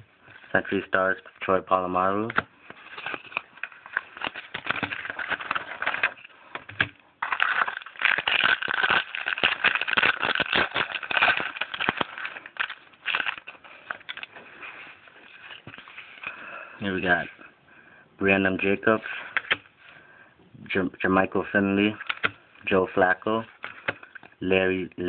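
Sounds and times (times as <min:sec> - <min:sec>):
trading cards shuffled by hand: 0:02.2 - 0:16.3, 0:19.1 - 0:19.7, 0:21.9 - 0:22.4.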